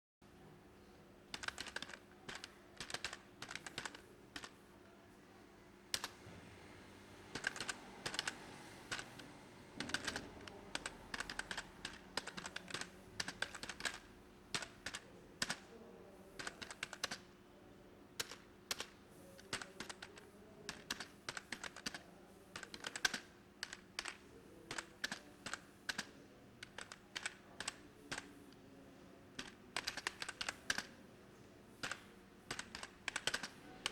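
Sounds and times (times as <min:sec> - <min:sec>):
typing on a keyboard: 0:01.3 - 0:04.6, 0:06.0 - 0:06.2, 0:07.3 - 0:09.2, 0:09.8 - 0:15.7, 0:16.4 - 0:17.3, 0:18.2 - 0:28.4, 0:29.4 - 0:31.0, 0:31.8 - 0:33.9.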